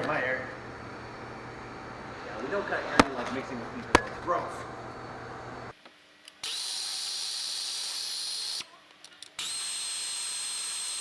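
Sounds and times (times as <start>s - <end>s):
power tool whining: 9.4s - 11.0s.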